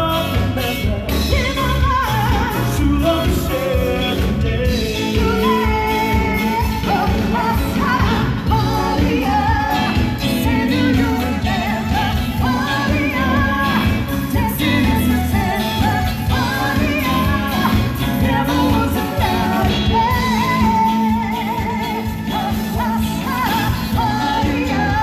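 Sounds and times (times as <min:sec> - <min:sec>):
pop song with singer and band: 0:00.0 - 0:25.0.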